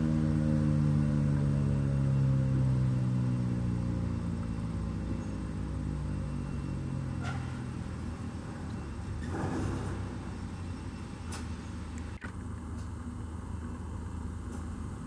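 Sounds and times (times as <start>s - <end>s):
warning siren winding down: 0.0s - 12.2s.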